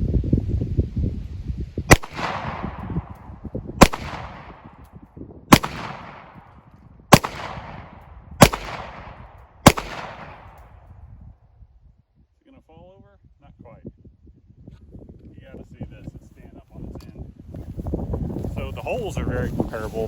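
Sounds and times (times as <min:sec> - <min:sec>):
pistol shots with echo: 0:01.9 - 0:03.2, 0:03.8 - 0:04.8, 0:05.5 - 0:06.5, 0:07.1 - 0:10.7.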